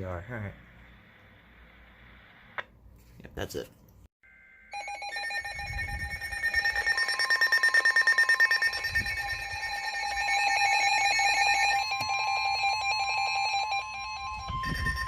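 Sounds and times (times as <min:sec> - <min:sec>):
steady alarm tone: 0:04.2 - 0:15.0
data tone: 0:04.3 - 0:15.0
electronic alarm beeps: 0:04.7 - 0:15.0.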